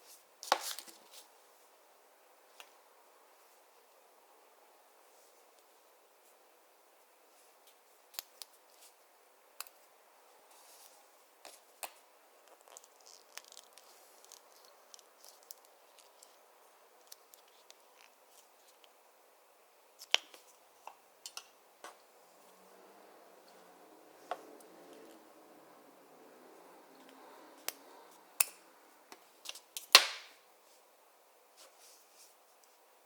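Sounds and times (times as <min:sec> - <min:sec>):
faint crinkling: 0:12.4 - 0:19.0.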